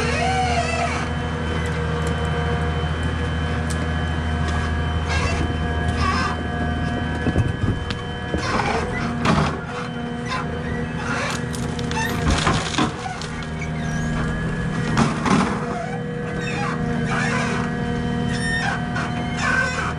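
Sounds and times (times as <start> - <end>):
diesel engine running: 0.0 - 19.9
hydraulic whine: 0.0 - 19.9
knocks and creaks: 5.0 - 17.7.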